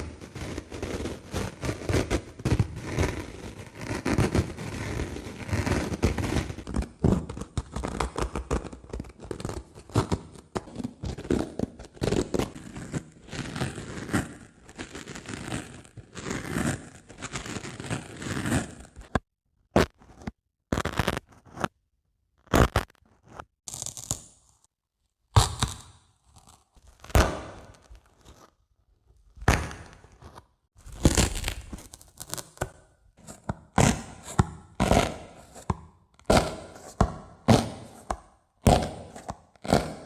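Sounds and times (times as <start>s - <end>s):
dry sponge scratching: 36.4s - 40.0s.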